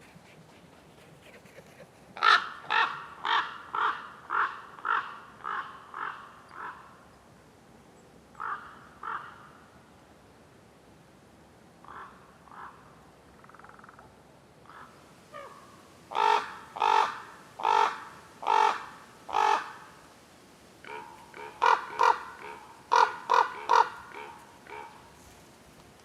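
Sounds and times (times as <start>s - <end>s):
ravens calling: 1.2s - 6.9s, 11.8s - 20.0s, 20.8s - 25.4s.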